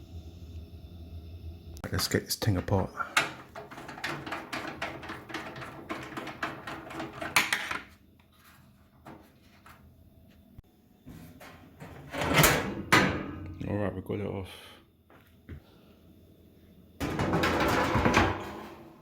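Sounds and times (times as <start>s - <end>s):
part clattering off: 3.1s - 7.9s
plastic panel clicking and rattling: 3.2s - 7.8s.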